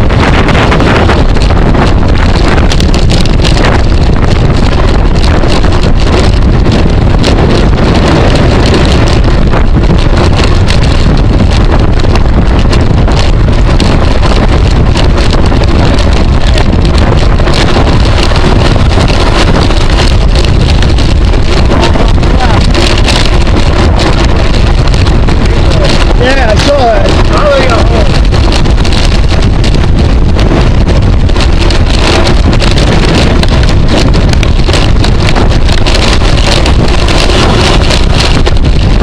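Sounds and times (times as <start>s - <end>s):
wind buffeting microphone: 0.0s - 39.0s.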